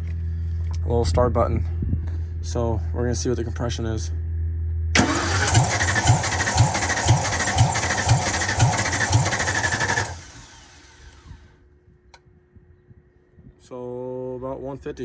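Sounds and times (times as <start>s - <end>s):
engine cranking without firing: 5.0s - 11.5s.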